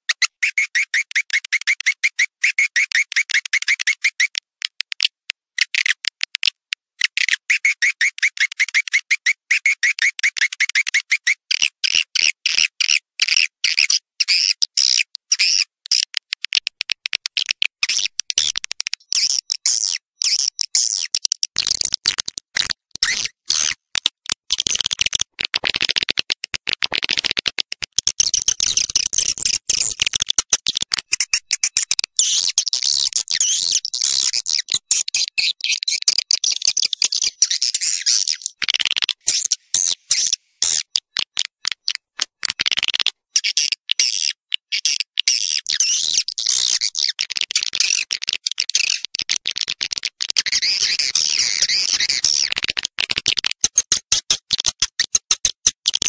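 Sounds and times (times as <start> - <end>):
high twittering bird chirps: 31.1 - 42.0, 50.4 - 52.6.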